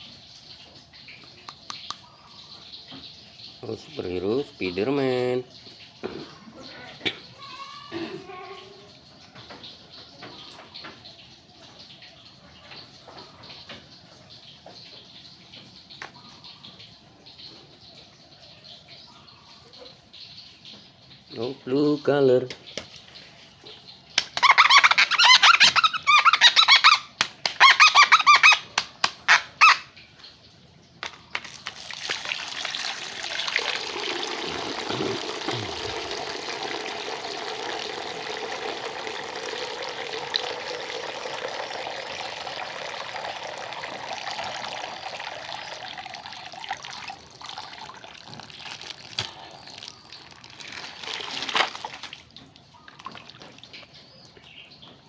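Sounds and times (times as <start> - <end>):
water running: 0.0 - 9.4, 21.2 - 30.3, 31.0 - 54.6.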